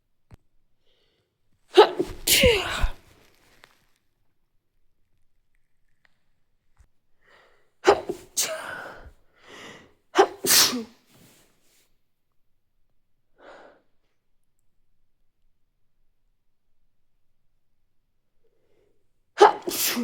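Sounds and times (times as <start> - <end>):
in-breath before sneeze: 1.8 - 3.3, 7.3 - 11.4
person sneezing: 1.8 - 3.3, 7.8 - 9.1, 10.2 - 11.0, 19.4 - 20.0.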